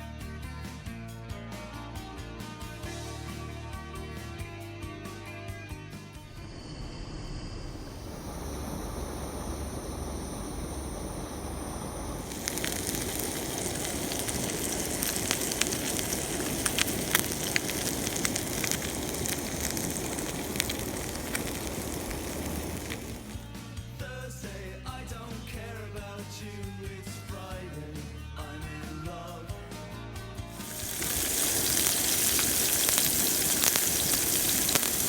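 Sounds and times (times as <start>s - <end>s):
sharp crackles and pops: 6.2s - 23.6s, 30.5s - 35.0s
meat sizzling in a pan: 6.4s - 23.6s, 30.4s - 35.0s.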